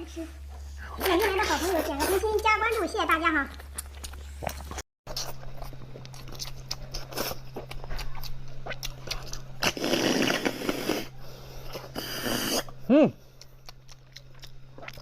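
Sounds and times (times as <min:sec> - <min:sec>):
person chewing meat: 0:03.5 - 0:15.0.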